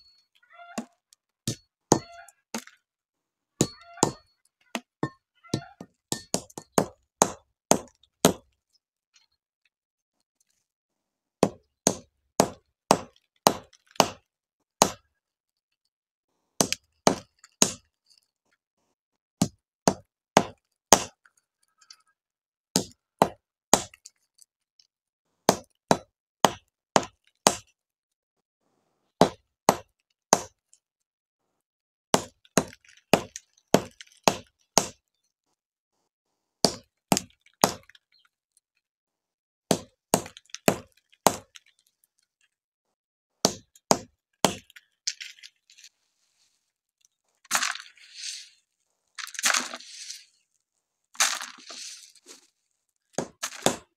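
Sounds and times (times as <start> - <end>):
sharp strikes cracking fruit stones: 11.4 - 15.1, 16.6 - 17.8, 19.4 - 21.2, 22.8 - 24.0, 25.5 - 27.7, 32.2 - 35.0, 36.6 - 38.0, 39.7 - 41.7, 43.4 - 44.8, 49.2 - 50.2, 51.2 - 52.4, 53.1 - 53.9.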